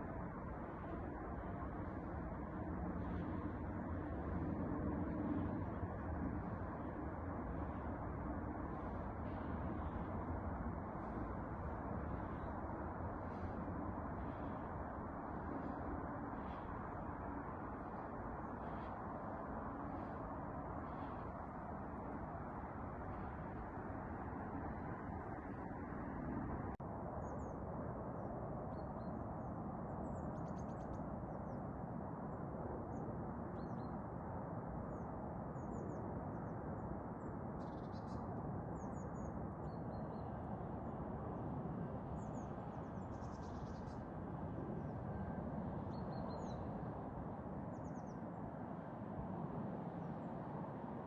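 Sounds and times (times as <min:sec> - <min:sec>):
steady rushing noise: 0:00.0 - 0:27.1.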